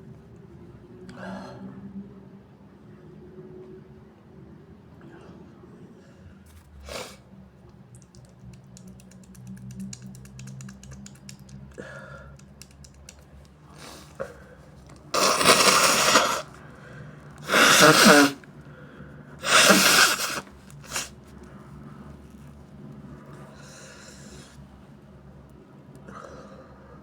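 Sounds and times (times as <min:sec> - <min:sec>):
person blowing nose: 0:06.8 - 0:07.2, 0:13.8 - 0:14.2, 0:15.1 - 0:16.6, 0:17.4 - 0:18.4, 0:19.4 - 0:21.2
faint crackling clicks: 0:07.7 - 0:15.1.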